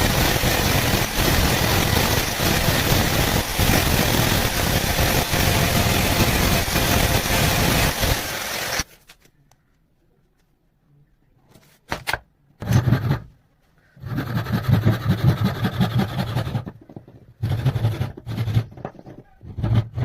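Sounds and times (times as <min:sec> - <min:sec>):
electric cutter motor running: 0:00.0 - 0:08.8.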